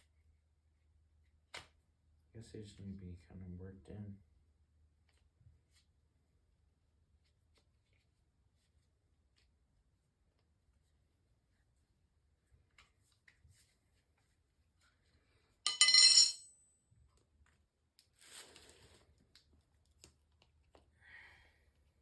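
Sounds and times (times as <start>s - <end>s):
metal tool clinking: 15.7s - 16.5s.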